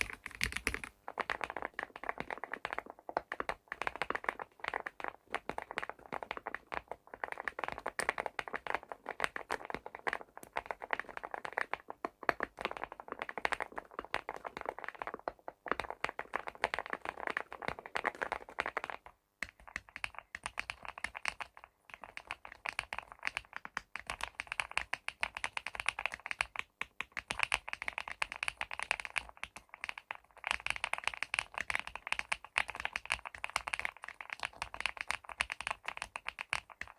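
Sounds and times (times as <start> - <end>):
mechanical keyboard typing: 0.0 - 2.8, 15.8 - 36.9.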